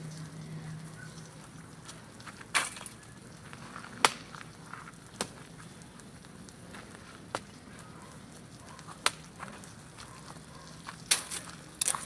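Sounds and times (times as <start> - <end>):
wood fire crackling: 0.0 - 12.0
sharp pops from burning wood: 2.3 - 7.8, 8.4 - 9.8, 10.9 - 12.0.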